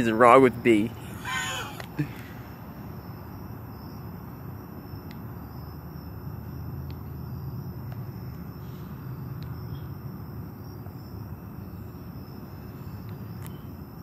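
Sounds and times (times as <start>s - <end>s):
vehicle traffic rumble: 0.0s - 14.0s
insect trilling: 1.0s - 2.4s.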